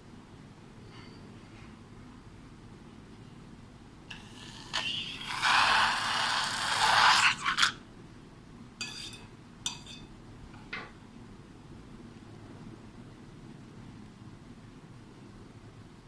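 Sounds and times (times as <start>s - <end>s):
rasping scrape: 4.1s - 7.8s.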